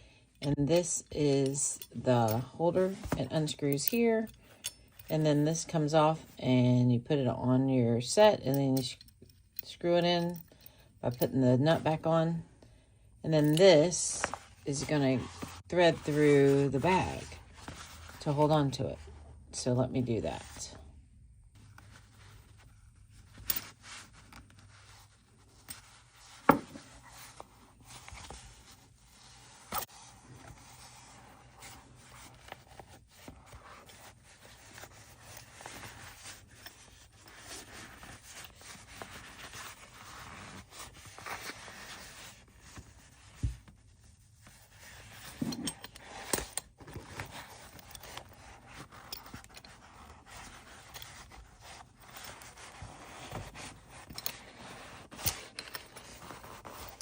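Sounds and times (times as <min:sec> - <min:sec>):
fabric rustling and scraping: 0:13.3 - 0:20.9, 0:21.5 - 0:57.0.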